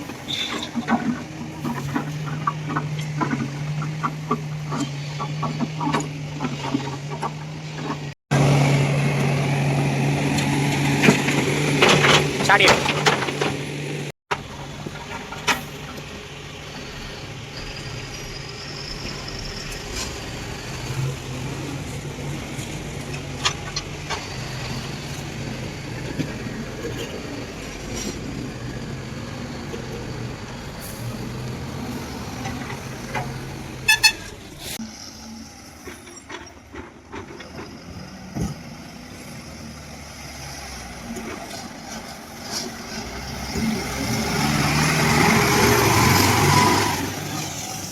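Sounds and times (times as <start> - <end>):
diesel engine drone: 0.0 - 47.9
metallic knocks and clanks: 11.0 - 15.7.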